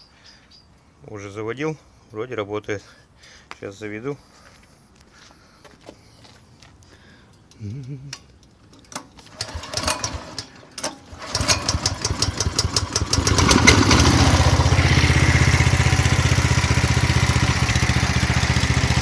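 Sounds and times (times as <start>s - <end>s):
engine clicks: 6.8s - 14.1s
engine idling: 9.3s - 19.0s.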